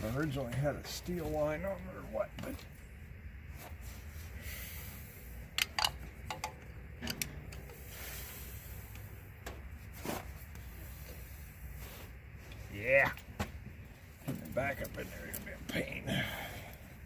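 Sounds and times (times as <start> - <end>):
hands clicking and scraping hose: 5.5 - 7.9.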